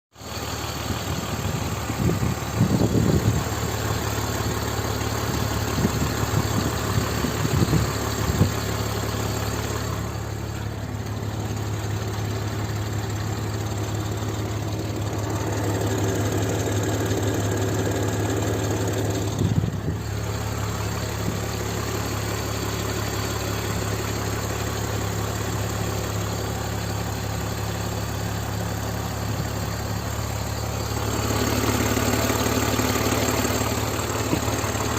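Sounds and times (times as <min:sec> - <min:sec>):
car engine idling: 0:00.1 - 0:34.9.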